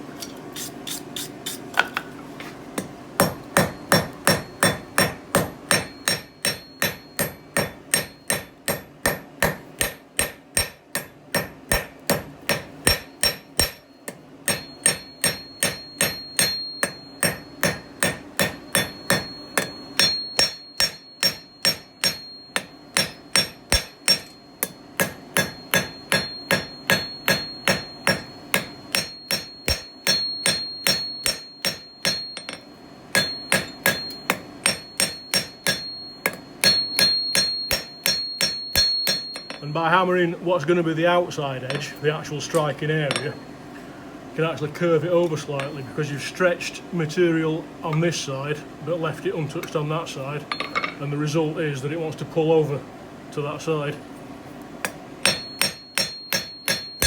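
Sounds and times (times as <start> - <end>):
hammer striking steel on anvil: 2.8 - 39.8, 41.6 - 43.4, 45.6 - 45.8, 50.5 - 51.0, 54.8 - 57.0
anvil ringing: 3.2 - 39.9, 41.6 - 43.4, 50.5 - 51.0, 55.2 - 57.0.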